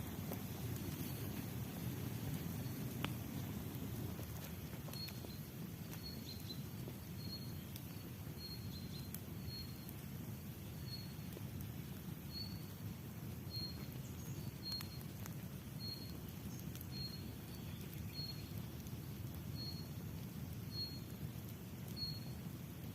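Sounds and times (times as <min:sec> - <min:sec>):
faint clicks: 0:02.9 - 0:07.0.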